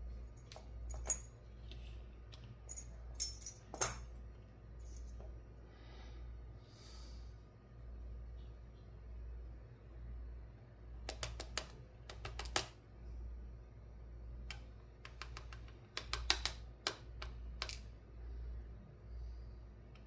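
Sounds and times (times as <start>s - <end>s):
metal clicks and taps: 14.5s - 17.8s.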